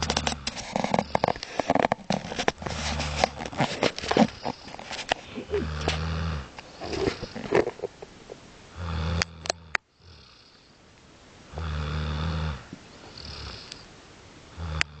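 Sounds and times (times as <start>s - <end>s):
quiet breathing: 0.0s - 15.0s
loud snoring: 5.3s - 7.6s, 8.7s - 10.7s, 11.5s - 13.8s, 14.5s - 15.0s.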